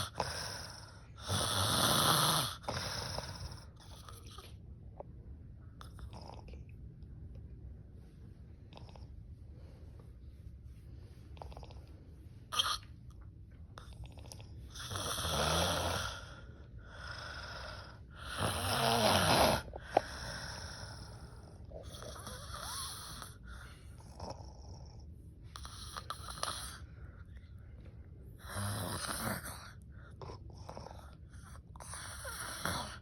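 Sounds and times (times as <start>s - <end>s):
woman snoring loudly: 0.0s - 3.2s, 14.8s - 16.3s, 17.0s - 20.9s, 28.5s - 29.5s.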